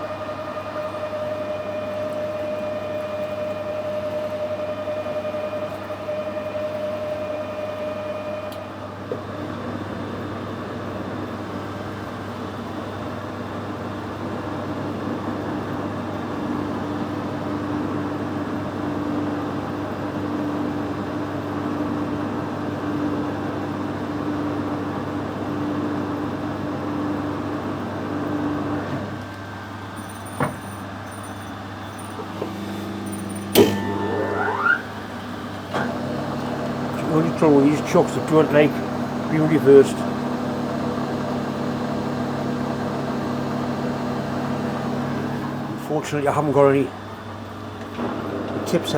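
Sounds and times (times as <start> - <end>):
metal lathe running: 0.0 - 8.9, 30.8 - 47.4
short rising whine: 31.9 - 39.3.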